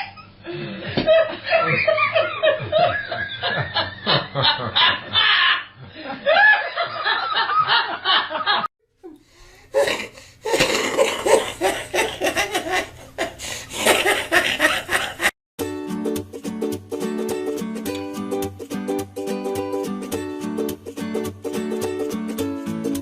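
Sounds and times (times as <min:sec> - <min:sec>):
people laughing: 0:00.0 - 0:08.7.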